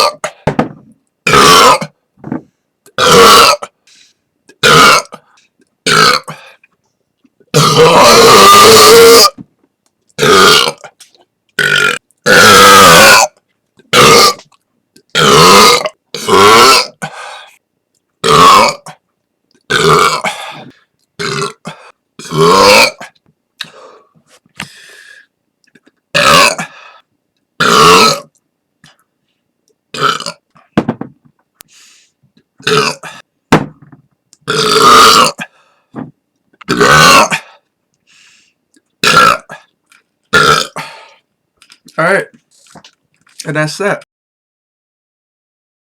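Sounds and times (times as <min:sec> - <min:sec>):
person belching: 0:00.0 - 0:00.3, 0:01.2 - 0:02.0, 0:02.9 - 0:03.7, 0:04.5 - 0:06.5, 0:07.5 - 0:09.4, 0:10.2 - 0:10.9, 0:11.6 - 0:13.3, 0:13.9 - 0:14.4, 0:15.1 - 0:17.0, 0:18.2 - 0:19.0, 0:19.7 - 0:23.2, 0:25.8 - 0:26.7, 0:27.6 - 0:28.3, 0:29.9 - 0:30.4, 0:32.6 - 0:33.2, 0:34.4 - 0:35.5, 0:36.6 - 0:37.5, 0:39.0 - 0:39.7, 0:40.3 - 0:41.0.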